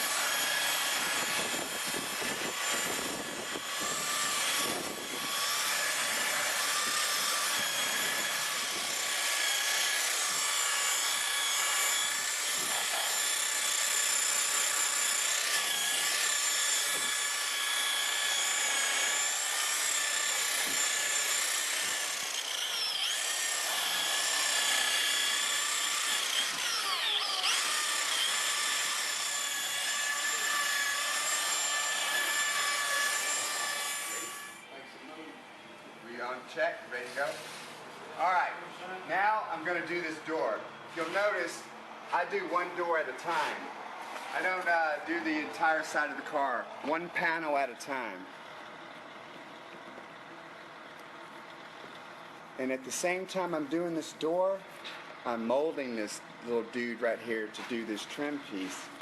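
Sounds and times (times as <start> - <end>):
polisher motor whine: 0.0 - 13.7, 14.4 - 34.6
pad rubbing on surface: 37.0 - 37.9.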